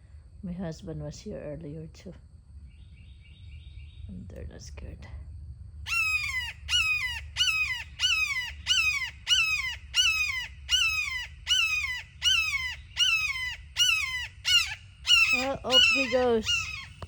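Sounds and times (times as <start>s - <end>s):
hawk screaming: 5.9s - 17.0s.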